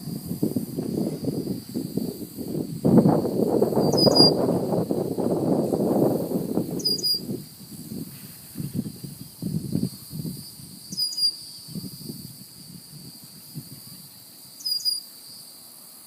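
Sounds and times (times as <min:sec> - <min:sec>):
low uneven rushing noise: 0:00.0 - 0:09.9.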